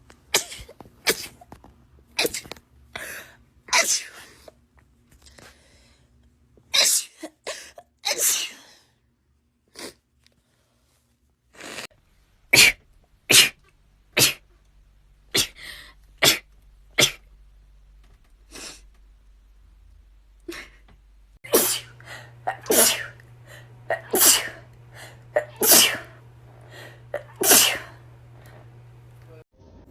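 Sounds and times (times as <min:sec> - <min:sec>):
person sneezing: 0:06.7 - 0:08.8, 0:12.5 - 0:13.6, 0:14.2 - 0:14.4, 0:15.3 - 0:17.2, 0:21.5 - 0:28.7.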